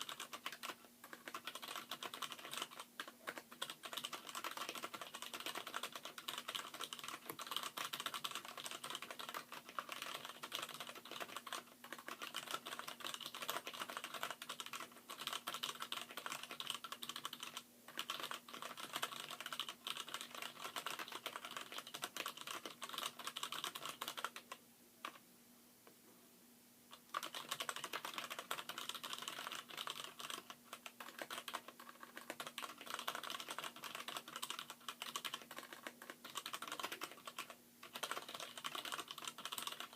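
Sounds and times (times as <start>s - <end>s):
fast mechanical keyboard typing: 0.0s - 25.2s, 27.0s - 39.9s.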